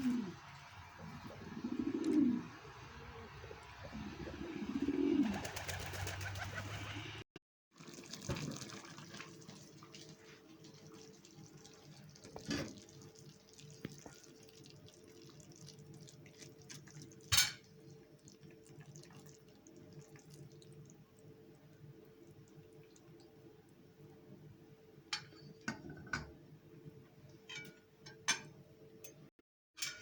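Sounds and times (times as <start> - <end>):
trickling water: 7.7 - 24.1.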